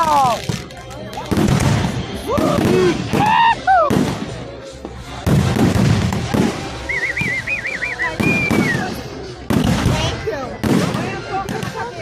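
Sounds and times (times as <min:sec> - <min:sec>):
fireworks crackling bangs: 0:00.0 - 0:12.0
high warbling whistle: 0:06.8 - 0:09.0
falling whistle: 0:06.9 - 0:08.9.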